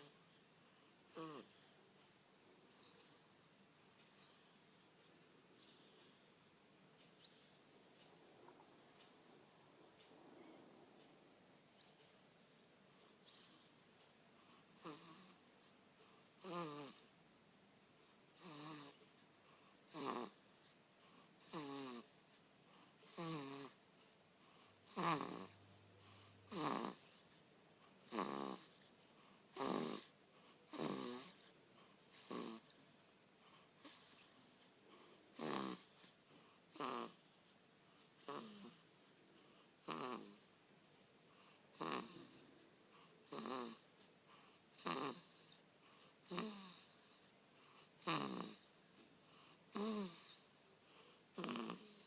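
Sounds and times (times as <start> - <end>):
baby snoring: 1.1 - 1.8, 14.8 - 15.4, 16.4 - 17.1, 18.4 - 19.1, 19.9 - 20.6, 21.4 - 22.1, 23.1 - 23.8, 24.8 - 27.2, 28.0 - 32.9, 33.6 - 37.5, 38.2 - 38.9, 39.8 - 40.5, 41.4 - 52.0.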